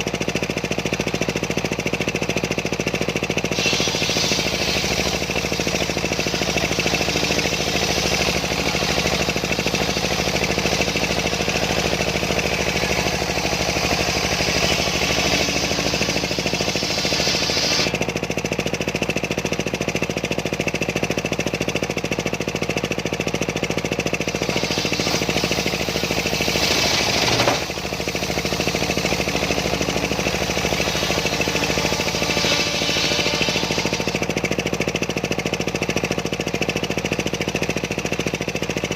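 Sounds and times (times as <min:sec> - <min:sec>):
engine running under load: 0:00.0 - 0:38.9
saw blade cutting log: 0:03.4 - 0:18.2, 0:24.2 - 0:35.0.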